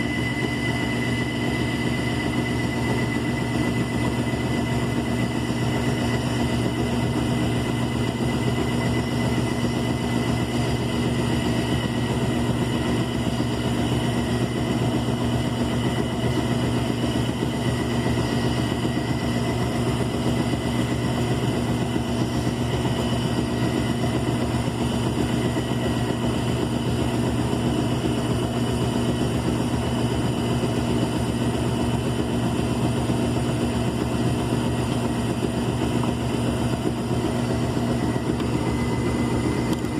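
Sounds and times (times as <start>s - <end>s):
faint high whine: 0.0s - 24.8s
washing machine motor hum: 0.0s - 39.9s.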